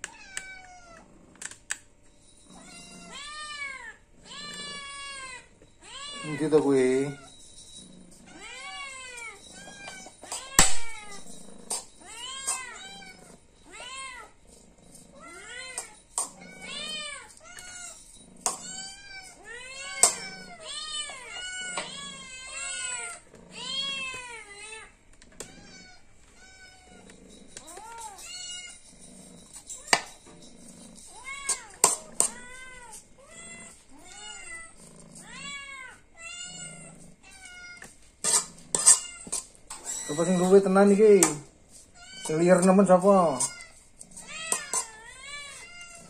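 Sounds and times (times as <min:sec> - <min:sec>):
cat meowing: 0:00.0 - 0:01.0, 0:02.6 - 0:07.3, 0:18.6 - 0:28.8, 0:42.0 - 0:46.0.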